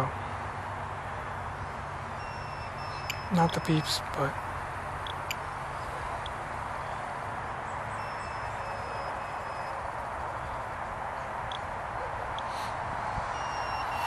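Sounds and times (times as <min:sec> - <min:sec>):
outdoor hiss: 0:00.0 - 0:14.0
small drone high whine: 0:01.6 - 0:14.0.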